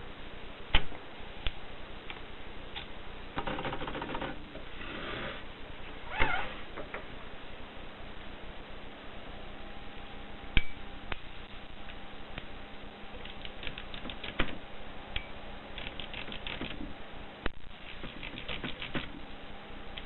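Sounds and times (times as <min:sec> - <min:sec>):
typewriter typing: 0:03.4 - 0:04.4, 0:13.2 - 0:14.6, 0:15.8 - 0:16.9, 0:17.9 - 0:19.2.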